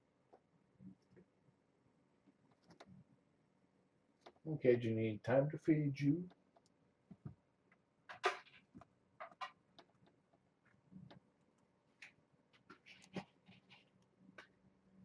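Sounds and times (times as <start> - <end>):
faint clicks and taps: 2.3 - 3.1, 4.2 - 4.5, 6.2 - 14.7
soft rustles: 12.0 - 14.5.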